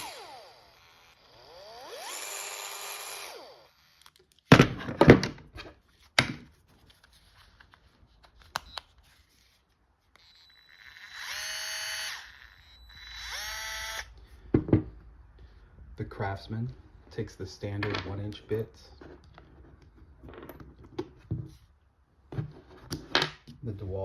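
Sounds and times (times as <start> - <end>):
cordless screwdriver motor whining: 0.0 - 4.5, 10.1 - 14.2.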